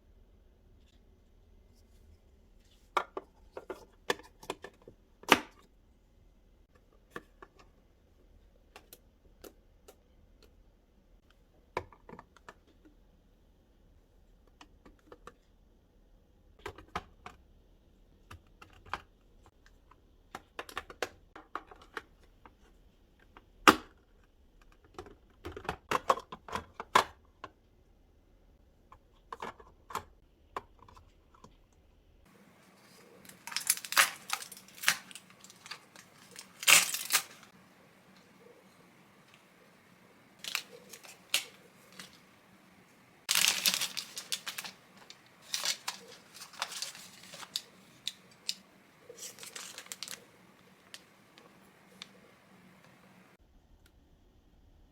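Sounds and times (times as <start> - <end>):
plastic packaging rustling: 32.4 - 37.5, 40.4 - 42.2, 43.3 - 52.2.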